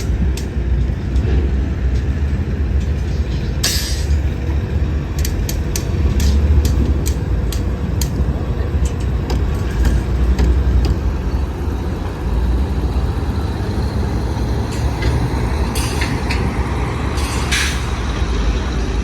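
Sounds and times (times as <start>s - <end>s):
heavy vehicle rumbling: 0.0s - 19.0s.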